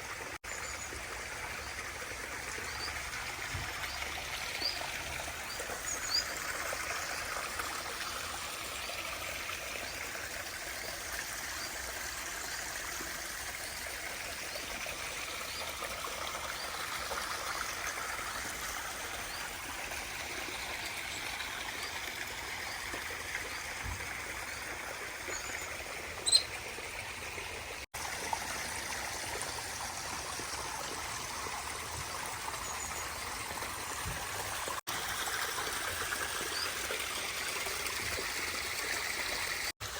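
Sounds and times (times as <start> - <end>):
stream and waterfall splashing: 0.0 - 39.9
birds chirping: 21.1 - 26.6.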